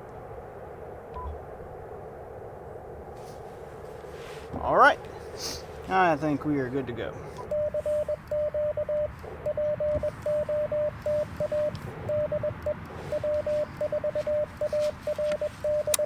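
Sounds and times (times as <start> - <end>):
morse code beeps: 7.4 - 16.0.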